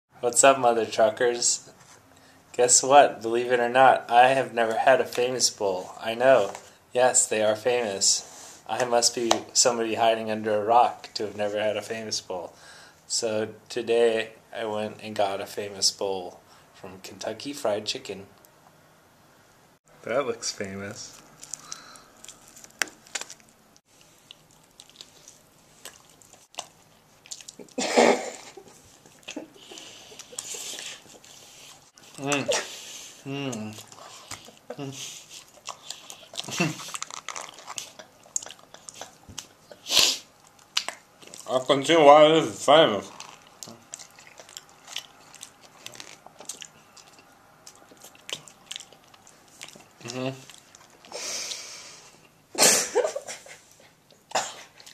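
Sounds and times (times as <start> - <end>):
person chewing: 21.1 - 27.8, 28.4 - 41.5, 43.0 - 52.4, 54.0 - 54.9.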